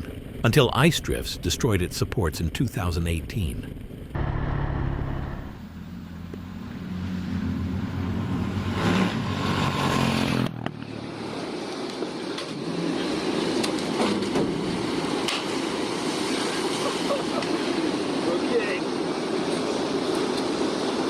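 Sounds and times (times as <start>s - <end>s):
vehicle engine running: 0.0s - 7.1s.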